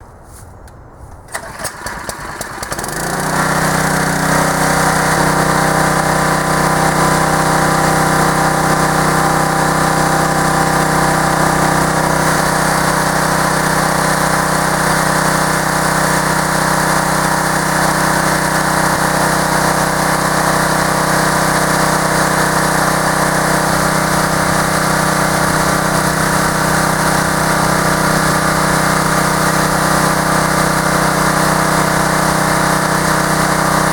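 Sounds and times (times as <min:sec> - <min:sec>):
small gasoline engine running: 0:01.3 - 0:33.9.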